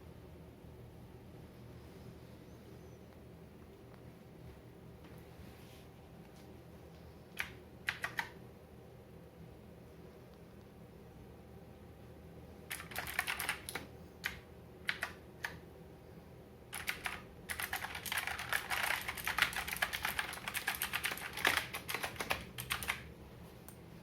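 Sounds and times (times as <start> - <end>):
mechanical keyboard typing: 7.4 - 8.4, 12.7 - 15.6, 16.7 - 23.1.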